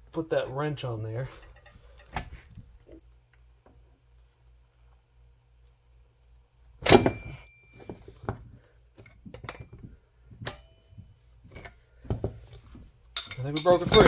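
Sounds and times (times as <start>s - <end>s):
metal tools clanking: 1.2s - 2.2s, 6.9s - 8.0s, 13.2s - 14.0s.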